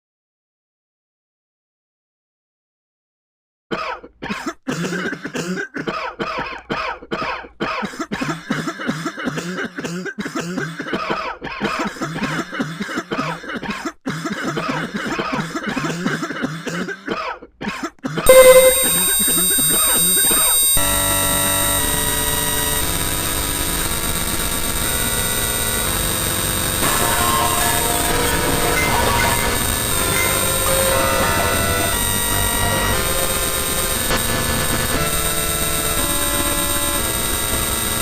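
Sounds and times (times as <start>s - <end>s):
person coughing: 3.7s - 18.3s
loud many-toned drone: 18.3s - 37.3s.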